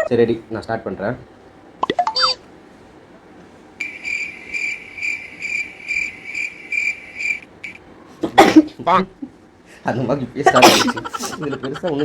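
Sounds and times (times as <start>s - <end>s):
cricket chirps: 3.8s - 7.9s.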